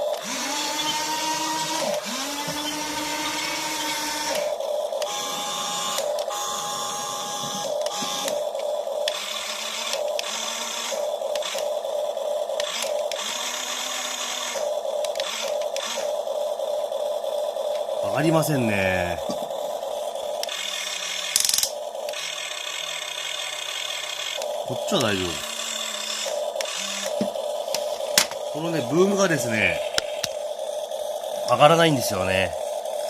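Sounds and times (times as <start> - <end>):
small electric motors whining: 0.0 - 33.0
simulated engine sound from speaker: 24.6 - 25.5, 28.5 - 30.2.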